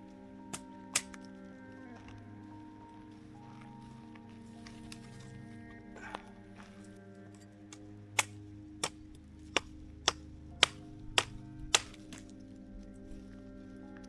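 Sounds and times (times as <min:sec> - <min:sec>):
soft background music: 0:00.0 - 0:14.0.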